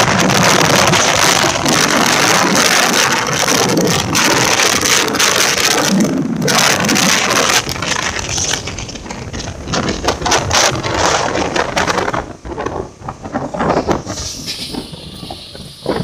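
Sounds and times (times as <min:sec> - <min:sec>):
train rushing noise: 0:00.0 - 0:16.0
train knocks and rattles: 0:07.2 - 0:16.0.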